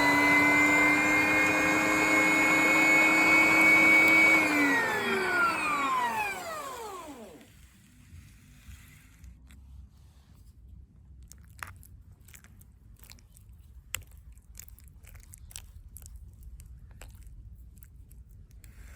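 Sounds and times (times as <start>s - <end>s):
meat grinder humming: 0.0s - 7.6s.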